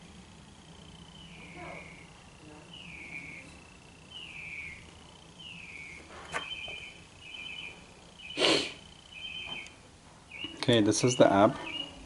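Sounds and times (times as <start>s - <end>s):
birds chirping: 0.0s - 12.0s
bird trills: 1.1s - 12.0s.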